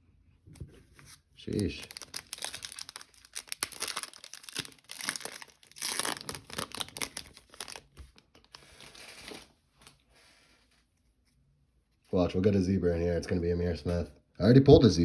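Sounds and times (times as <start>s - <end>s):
foil wrapper tearing and crinkling: 1.5s - 9.5s.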